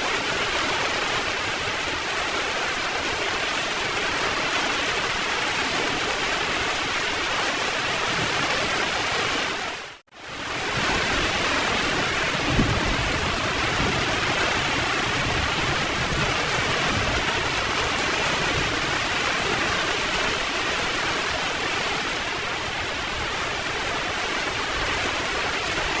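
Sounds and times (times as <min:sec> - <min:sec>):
heavy rain: 0:00.0 - 0:26.0
low thunder rumble: 0:12.3 - 0:17.2.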